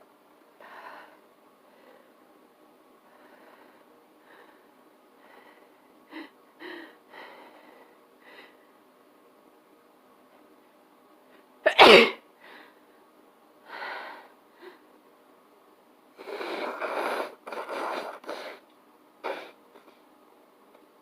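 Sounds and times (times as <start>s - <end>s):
person sneezing: 11.7s - 12.2s.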